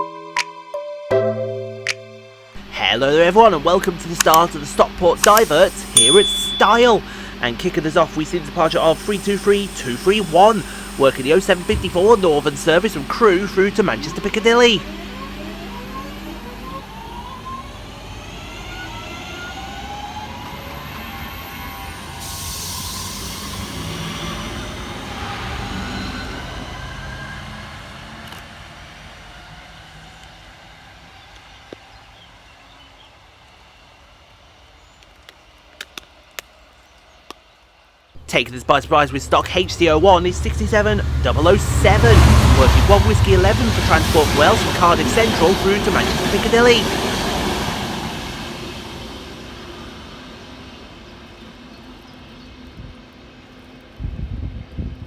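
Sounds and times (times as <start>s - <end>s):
diesel locomotive engine drone: 1.4s - 55.0s
electric train motors whining: 2.5s - 55.0s
train wheels rumbling: 2.6s - 15.4s, 38.2s - 52.7s.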